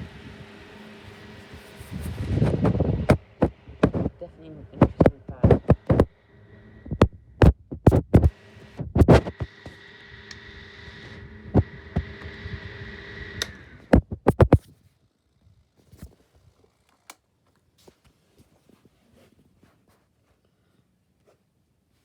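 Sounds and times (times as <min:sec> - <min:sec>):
fan motor humming: 0:00.0 - 0:14.6.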